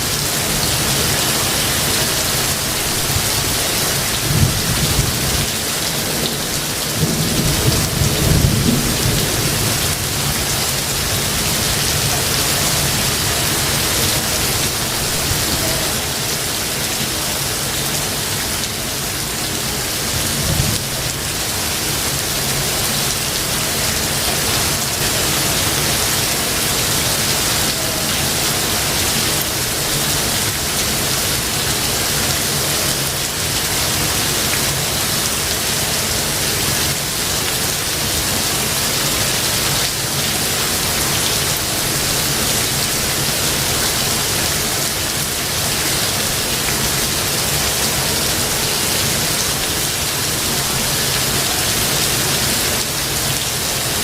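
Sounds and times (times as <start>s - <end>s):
steady rain falling: 0.0s - 54.0s
low thunder rumbling: 2.5s - 12.9s, 20.1s - 21.6s.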